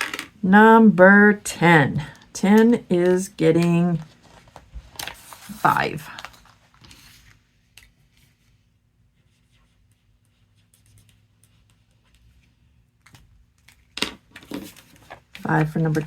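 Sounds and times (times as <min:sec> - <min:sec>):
paper scratching and rustling: 0:14.4 - 0:16.0.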